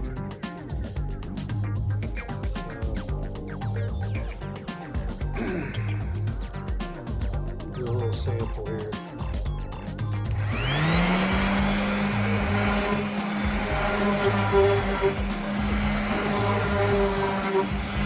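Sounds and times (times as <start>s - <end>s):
electric sander whine: 10.3s - 18.0s.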